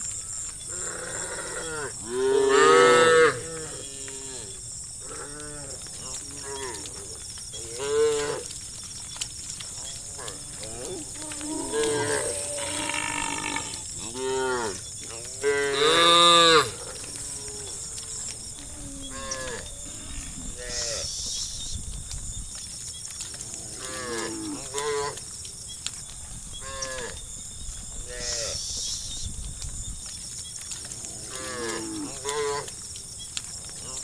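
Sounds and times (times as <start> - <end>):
cows mooing: 0.7 - 7.0, 9.9 - 21.1.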